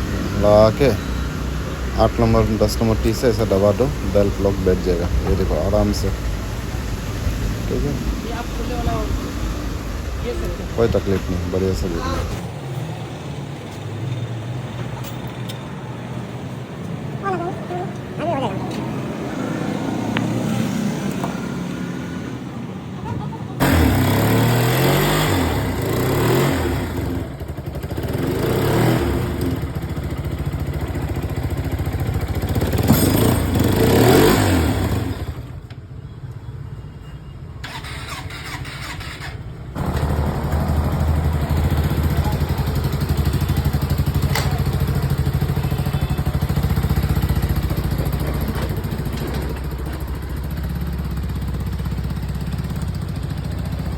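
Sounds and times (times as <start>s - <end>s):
motorcycle engine revving: 23.6s - 35.6s, 37.7s - 53.9s.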